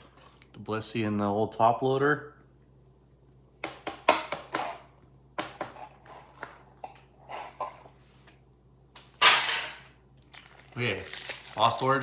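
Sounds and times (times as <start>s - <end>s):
cards and packaging clicking: 10.2s - 12.0s
foil packaging crinkle: 10.2s - 12.0s.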